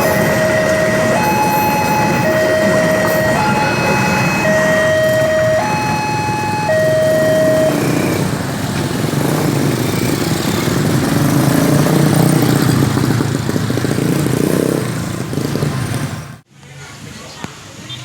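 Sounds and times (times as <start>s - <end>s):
level crossing alarm beeping: 0.0s - 9.3s
passing traffic rumble: 0.0s - 18.0s.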